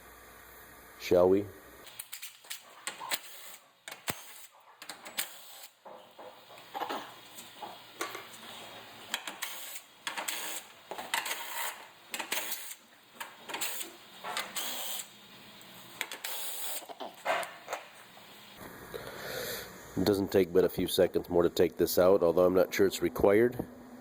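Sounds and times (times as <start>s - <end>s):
hand tools clicking and rattling: 1.9s - 15.1s, 16.0s - 18.0s
tool scraping: 1.9s - 15.1s.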